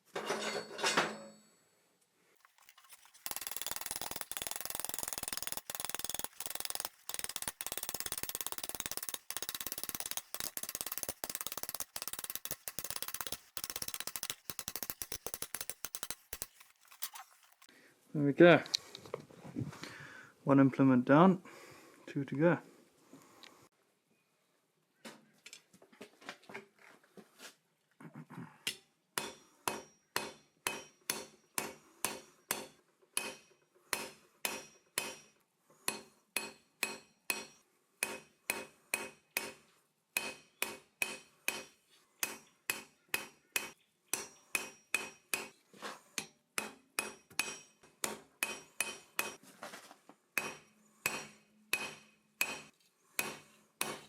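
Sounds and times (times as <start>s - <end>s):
hammer striking iron on anvil: 29.2s - 35.3s, 35.9s - 39.6s, 40.2s - 45.5s, 50.4s - 54.0s.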